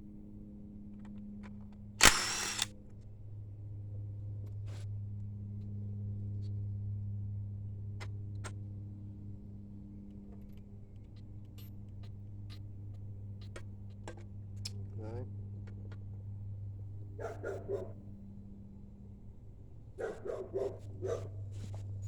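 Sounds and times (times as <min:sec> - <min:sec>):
hand tools clicking on bolts: 0:02.0 - 0:02.7
steady low hum: 0:02.0 - 0:02.7.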